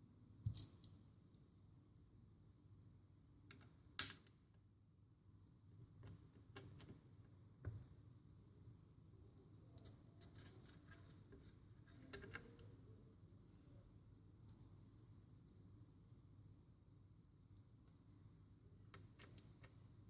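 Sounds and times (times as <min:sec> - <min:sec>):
small hard parts clicking and tapping: 0:09.3 - 0:12.7, 0:18.9 - 0:19.8.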